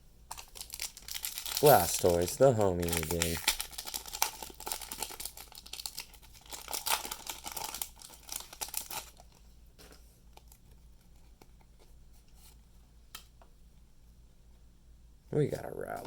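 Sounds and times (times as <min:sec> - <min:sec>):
foil wrapper tearing and crumpling: 0:00.3 - 0:09.4
cards being handled: 0:01.5 - 0:03.7.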